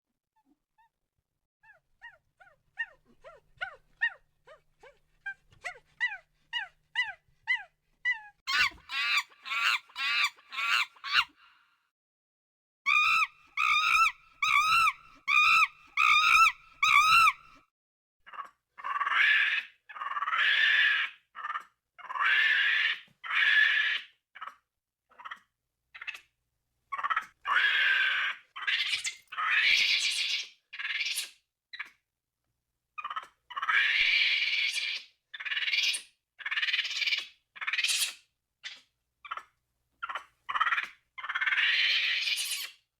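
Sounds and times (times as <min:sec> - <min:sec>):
primate calling and screaming: 0:01.6 - 0:11.7, 0:12.9 - 0:17.6, 0:18.3 - 0:26.3, 0:26.9 - 0:32.0, 0:33.0 - 0:42.8.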